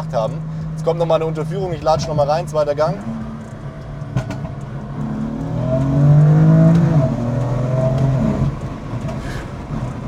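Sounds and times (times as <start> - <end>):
car engine accelerating: 0.0 - 10.0.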